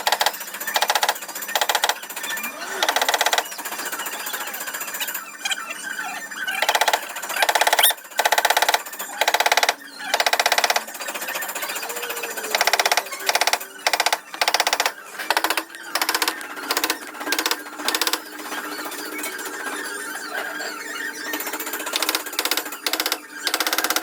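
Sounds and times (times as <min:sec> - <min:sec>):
air tool rapid hammering: 0:00.0 - 0:02.1, 0:02.8 - 0:03.5, 0:06.6 - 0:10.9, 0:12.5 - 0:18.2, 0:22.0 - 0:24.0.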